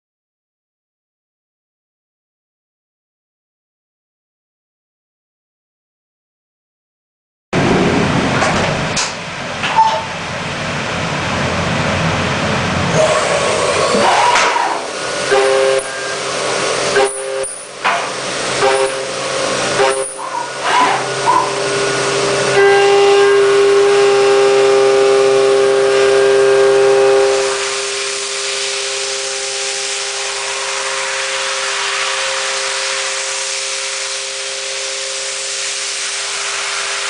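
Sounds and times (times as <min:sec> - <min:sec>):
milling machine spindle whining: 0:12.8 - 0:37.0.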